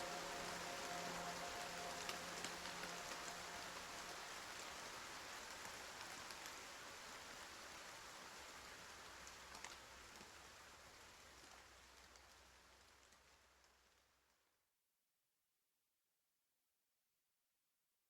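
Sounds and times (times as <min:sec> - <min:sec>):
rain falling: 0:00.0 - 0:14.3
raindrop ticks: 0:01.8 - 0:07.0, 0:09.1 - 0:14.0.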